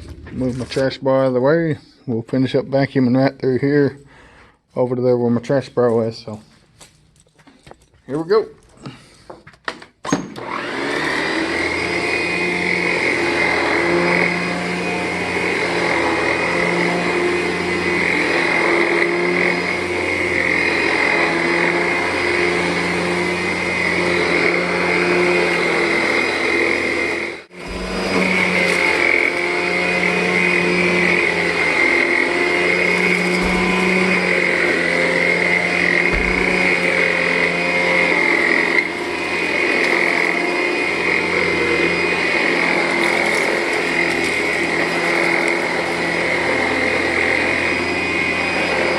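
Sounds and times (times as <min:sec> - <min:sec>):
vacuum cleaner on carpet: 0:10.2 - 0:48.9.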